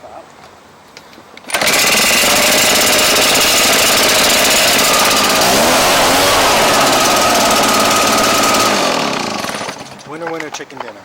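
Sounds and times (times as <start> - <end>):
leaf blower engine running: 1.5 - 10.1.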